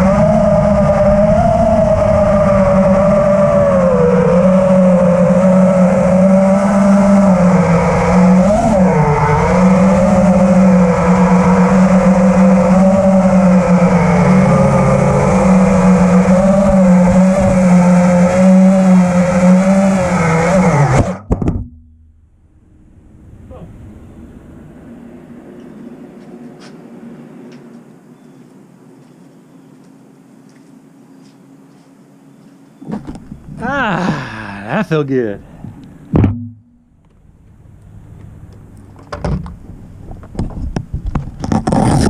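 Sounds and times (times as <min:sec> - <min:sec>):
drone motors whining: 0:00.0 - 0:21.3, 0:22.4 - 0:28.6, 0:32.3 - 0:34.8.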